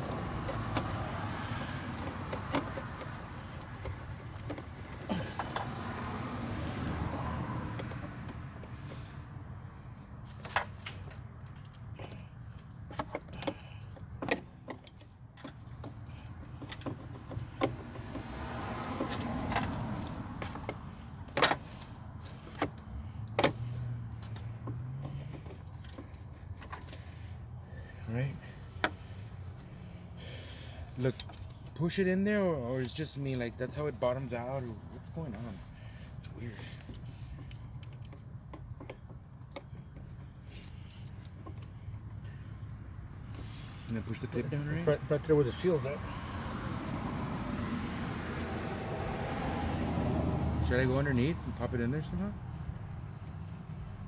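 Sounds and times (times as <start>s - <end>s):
hand tools clicking and clinking: 0.4s - 5.9s, 10.2s - 27.2s.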